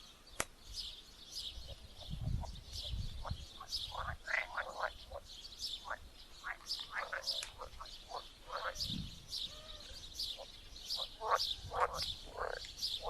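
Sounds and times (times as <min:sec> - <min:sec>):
small birds chirping: 0:00.0 - 0:13.0
frogs croaking: 0:03.2 - 0:13.0.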